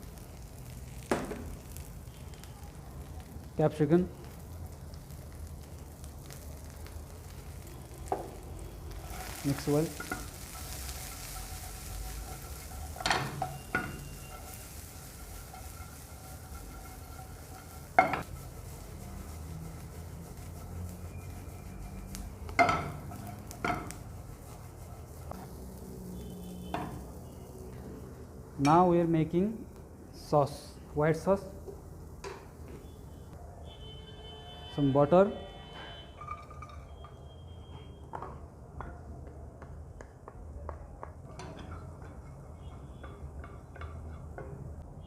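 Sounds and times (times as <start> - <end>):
spoon scraping cooking pan: 8.0 - 25.6
metal cookware clanking: 8.9 - 18.4, 22.4 - 24.1, 35.6 - 38.4, 41.3 - 44.7.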